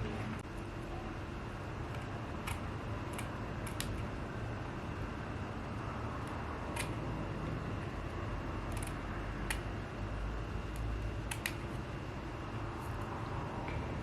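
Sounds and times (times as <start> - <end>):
room hum: 0.0 - 14.0
light sharp clicks and snips: 10.7 - 11.6.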